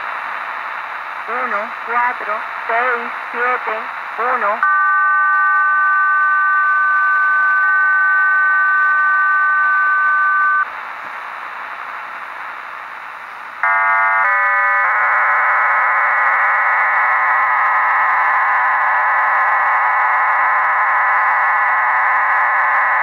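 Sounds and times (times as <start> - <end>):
radio static hiss: 0.0 - 4.7, 5.4 - 14.2
steady radio tones: 0.0 - 4.7
multi-tone digital data signal: 4.4 - 10.7.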